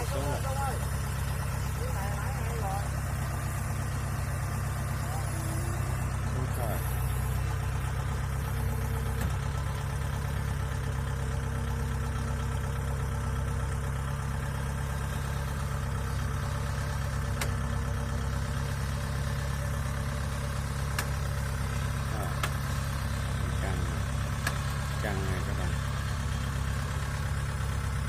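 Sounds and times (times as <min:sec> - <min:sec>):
diesel engine droning: 0:00.0 - 0:28.0.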